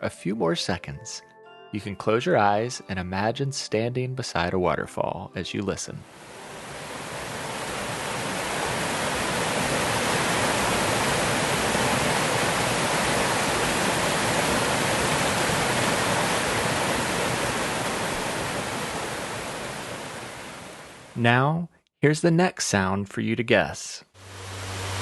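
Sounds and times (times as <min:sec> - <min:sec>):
waterfall rushing: 0:06.1 - 0:21.1, 0:24.2 - 0:25.0.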